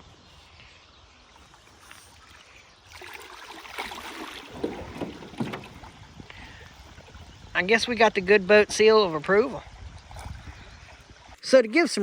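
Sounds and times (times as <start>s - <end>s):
dog moving in boat: 1.4s - 12.0s
knocks and scrapes: 4.5s - 6.2s.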